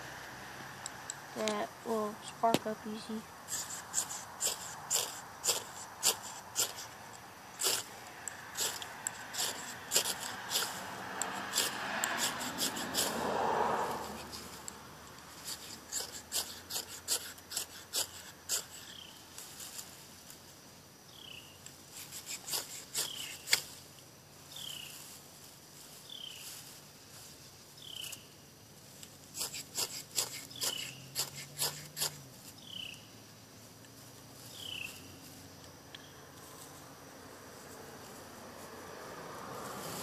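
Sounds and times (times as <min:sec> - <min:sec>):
ferro rod scraping: 0:03.5 - 0:19.9, 0:21.9 - 0:23.8, 0:29.3 - 0:32.4.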